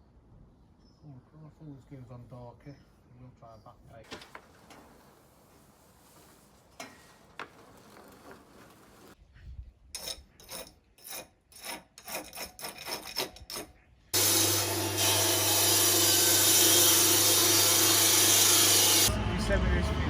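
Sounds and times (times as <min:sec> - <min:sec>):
hand scraping strokes: 0:04.4 - 0:09.2
loud machine hum: 0:14.2 - 0:20.0.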